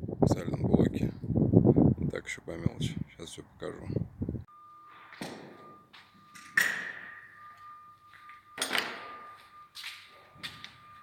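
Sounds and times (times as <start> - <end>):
high-pitched beep: 4.5 - 11.0
sharp knocks and clunks: 5.1 - 7.3.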